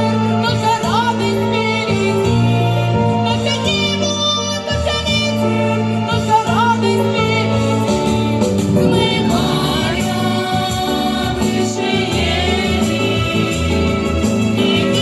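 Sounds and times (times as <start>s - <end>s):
instrumental accompaniment: 7.8s - 14.6s
choir singing: 8.4s - 15.0s.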